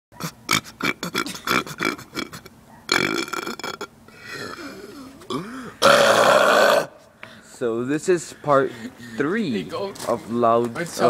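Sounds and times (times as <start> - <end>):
man belching: 0.2 - 7.0.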